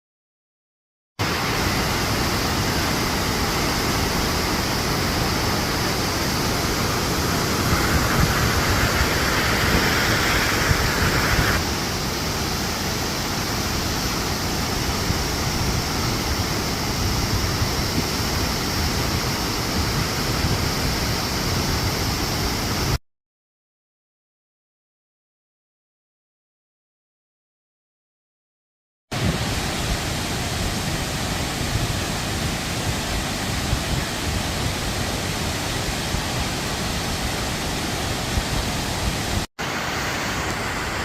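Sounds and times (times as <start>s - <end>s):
waterfall rushing: 1.2s - 23.0s, 29.1s - 41.0s.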